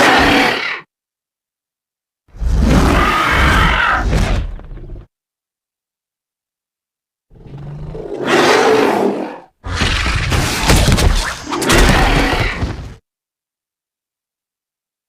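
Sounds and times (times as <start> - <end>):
dinosaur roar: 2.4 - 5.0, 7.3 - 10.2.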